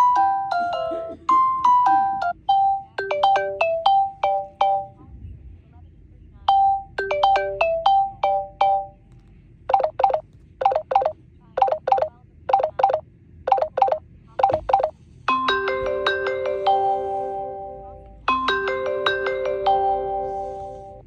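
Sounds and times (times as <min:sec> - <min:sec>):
ringtone of electronic beeps: 0:00.0 - 0:05.0, 0:06.5 - 0:09.0, 0:09.7 - 0:14.9
bell-like ringtone chimes: 0:09.7 - 0:14.9.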